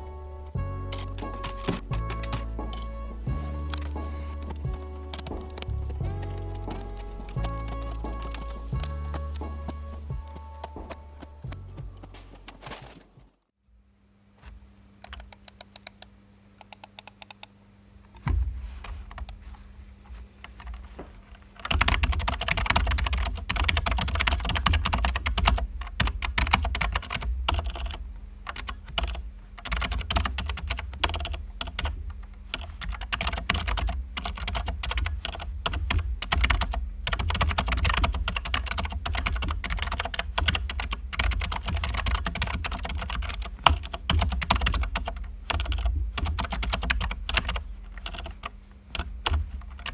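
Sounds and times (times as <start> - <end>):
mechanical keyboard typing: 15.0 - 17.5, 18.8 - 19.5, 20.4 - 49.9.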